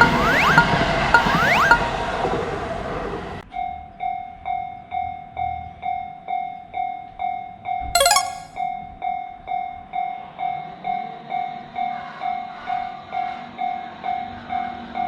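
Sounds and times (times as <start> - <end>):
level-crossing alarm bell: 0.0 - 2.1.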